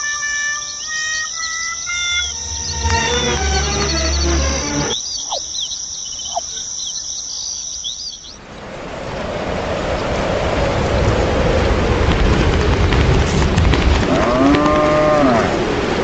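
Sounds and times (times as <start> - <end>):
crickets chirping: 0.0 - 8.4
rushing noise: 0.7 - 5.0.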